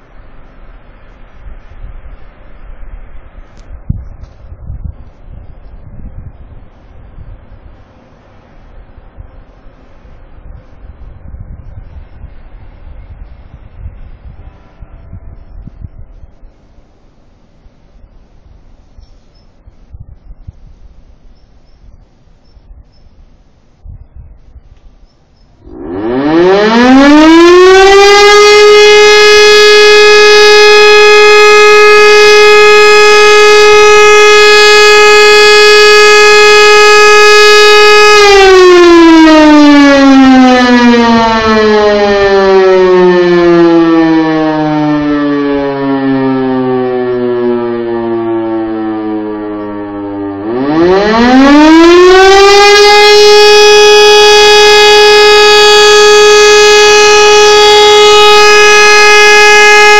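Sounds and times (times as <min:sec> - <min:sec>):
rotary siren wailing: 0:13.9 - 0:16.3, 0:25.6 - 0:59.9.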